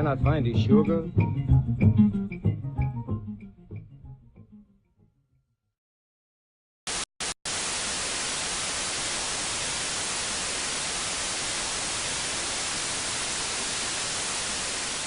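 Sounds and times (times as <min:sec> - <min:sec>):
white-noise static hiss: 0:06.9 - 0:15.0.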